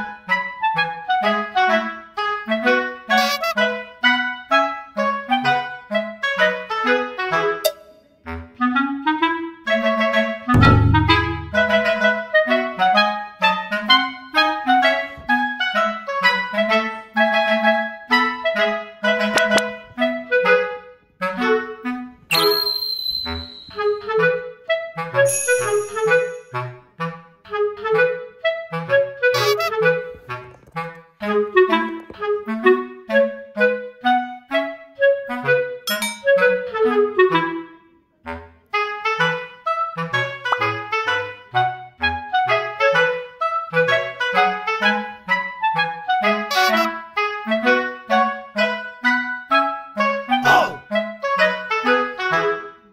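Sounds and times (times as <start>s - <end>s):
bouncy woodwind tune: 0.0s - 52.9s
clarinet melody: 0.0s - 52.9s
simple bass line: 10.6s - 12.0s.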